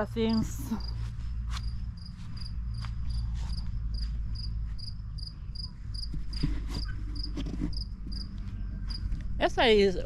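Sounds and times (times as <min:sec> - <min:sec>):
cricket chirping: 0:01.6 - 0:06.4, 0:07.2 - 0:09.1
knocks and rustles: 0:06.0 - 0:09.2.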